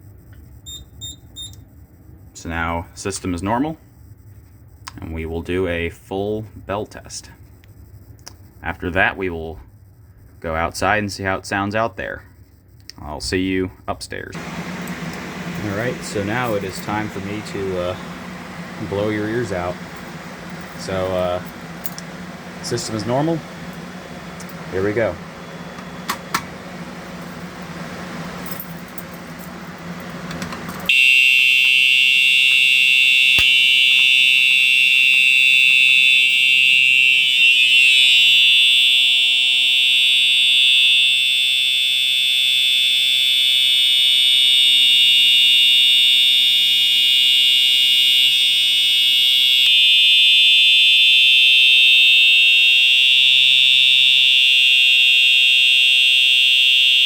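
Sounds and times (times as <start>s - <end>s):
high-pitched fire alarm tone: 0.0s - 30.1s, 30.9s - 57.0s
low hum: 6.4s - 30.9s.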